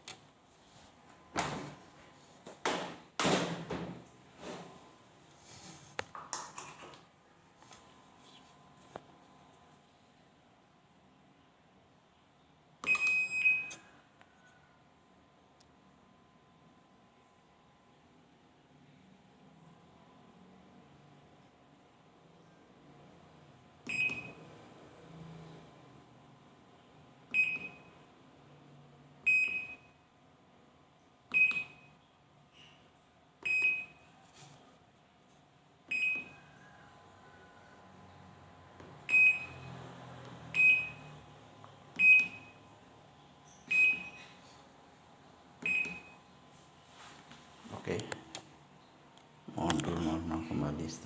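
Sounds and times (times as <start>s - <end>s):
washing machine panel beeps: 12.8s - 13.9s, 23.8s - 24.5s, 27.3s - 28.0s, 29.2s - 30.0s, 31.3s - 32.0s, 33.4s - 34.1s, 35.9s - 36.6s, 39.0s - 39.7s, 40.5s - 41.2s, 41.9s - 42.7s, 43.5s - 44.4s, 45.6s - 46.3s.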